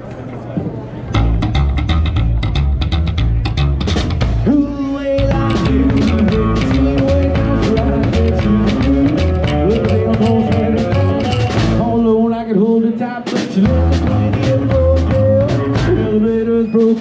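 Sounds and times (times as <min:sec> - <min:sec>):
live rock band playing: 0:01.2 - 0:17.0.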